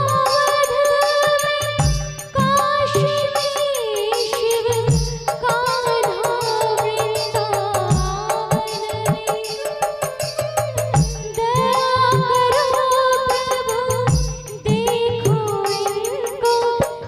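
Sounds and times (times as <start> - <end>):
steady percussion beat: 0.0 - 17.0.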